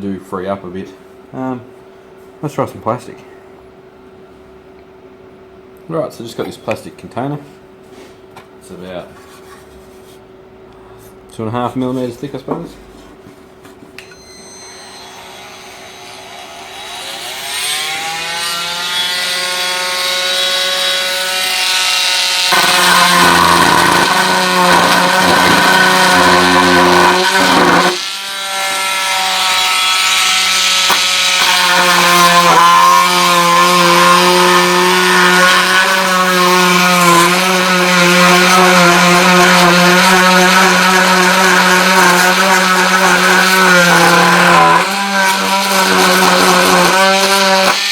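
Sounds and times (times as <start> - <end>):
oscillating tool motor buzzing: 14.1 - 47.9
blade cutting plastic: 16.5 - 47.9.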